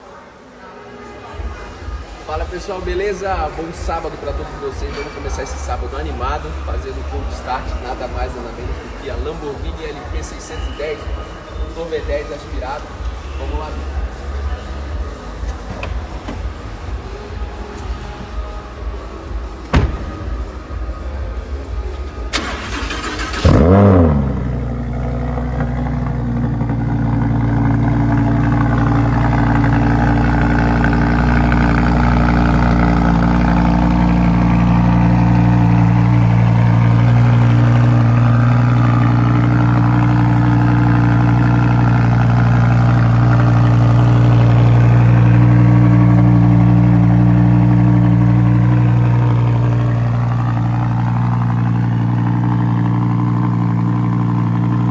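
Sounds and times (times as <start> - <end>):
car engine fast idle: 22.3 - 54.9.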